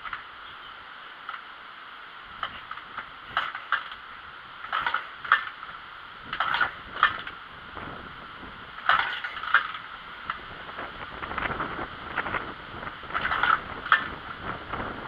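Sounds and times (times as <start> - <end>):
motorcycle engine clattering and popping: 2.4 - 4.0, 4.6 - 7.4, 8.8 - 10.5, 13.1 - 14.8.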